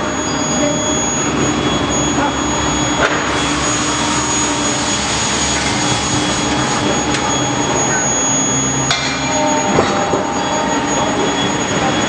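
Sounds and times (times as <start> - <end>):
high-pitched tone: 0.0 - 12.0
induction furnace machine noise: 0.0 - 12.0.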